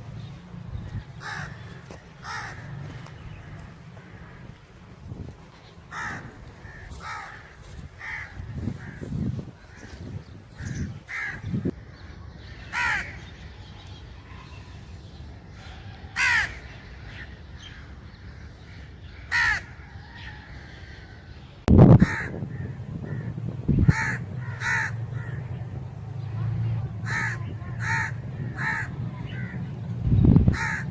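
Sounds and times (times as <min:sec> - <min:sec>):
crows cawing: 0:00.0 - 0:11.7, 0:12.8 - 0:13.2, 0:16.2 - 0:16.7, 0:19.3 - 0:19.8, 0:21.9 - 0:30.9.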